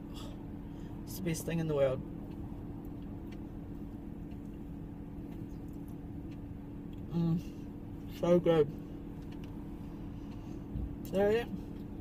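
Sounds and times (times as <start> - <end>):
car cabin engine and road noise: 0.0 - 12.0.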